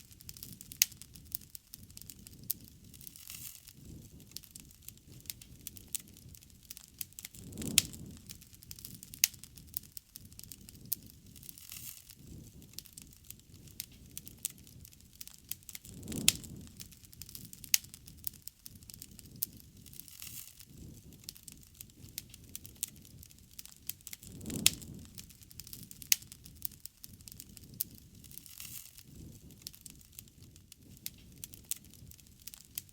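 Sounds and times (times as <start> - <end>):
campfire crackling and popping: 0.0 - 32.9
flames flaring: 0.0 - 32.9.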